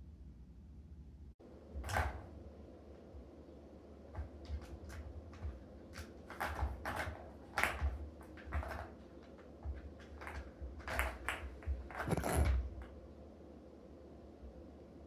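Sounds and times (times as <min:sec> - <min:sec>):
balls rattling around toy track: 0:04.2 - 0:12.9.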